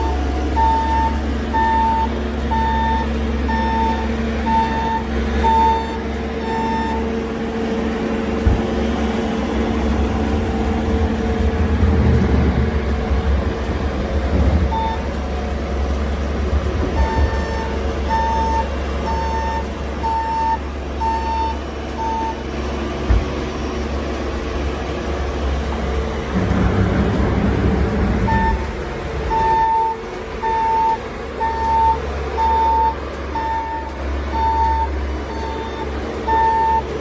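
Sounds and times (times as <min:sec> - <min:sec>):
reversing alarm beeping: 0:00.0 - 0:07.1, 0:14.6 - 0:15.2, 0:16.9 - 0:22.4, 0:26.3 - 0:37.0
heavy vehicle engine running: 0:00.0 - 0:37.0.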